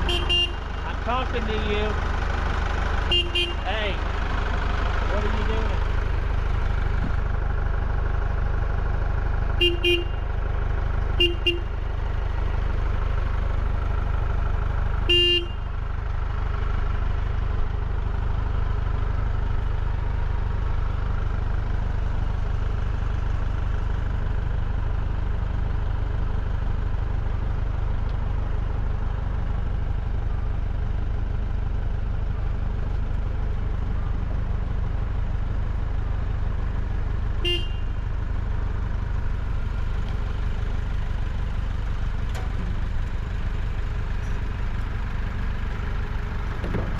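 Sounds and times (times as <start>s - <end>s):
short horn toots: 0.0s - 0.7s, 3.1s - 3.7s, 11.2s - 11.8s, 37.4s - 38.0s
engine idling: 0.0s - 46.9s.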